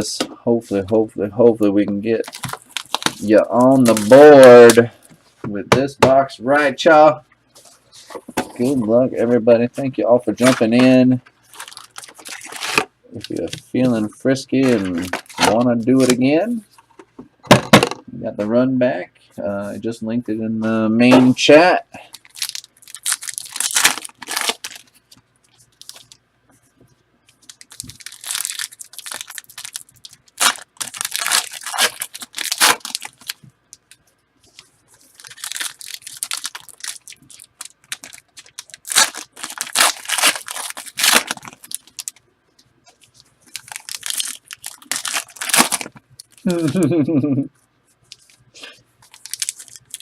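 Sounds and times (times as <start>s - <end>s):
foil wrappers tearing and crinkling: 2.2s - 4.9s, 11.5s - 13.6s, 22.1s - 25.0s, 25.7s - 26.2s, 27.4s - 34.0s, 35.0s - 42.2s, 43.4s - 46.9s, 49.0s - 50.0s.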